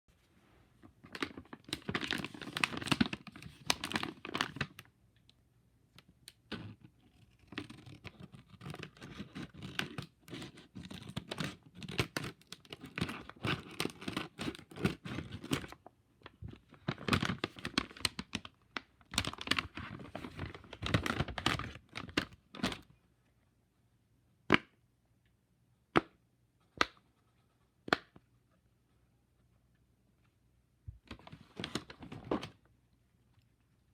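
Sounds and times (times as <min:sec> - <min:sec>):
packaging tearing and crinkling: 0:06.5 - 0:15.8, 0:19.1 - 0:22.8.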